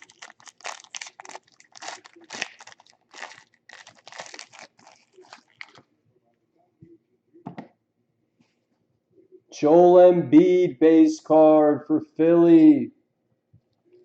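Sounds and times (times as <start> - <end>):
plastic wrapping tearing and crinkling: 0.0 - 5.8.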